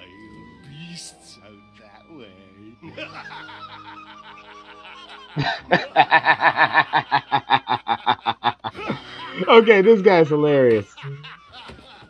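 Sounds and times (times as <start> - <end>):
cartoon man cackling laugh: 2.8 - 9.0.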